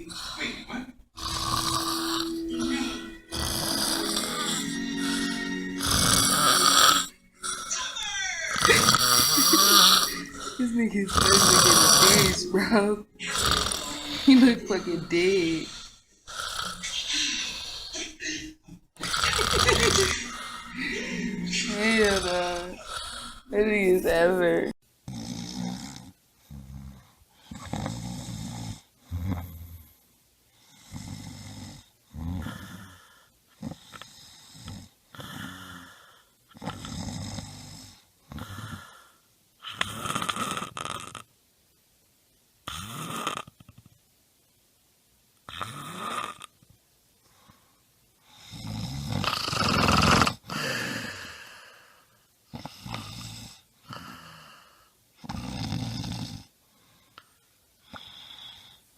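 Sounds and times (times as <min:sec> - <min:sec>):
person snoring: 0:00.0 - 0:18.0, 0:19.0 - 0:24.5, 0:25.1 - 0:29.9, 0:30.8 - 0:39.0, 0:39.6 - 0:41.2, 0:48.4 - 0:52.0, 0:52.6 - 0:56.5.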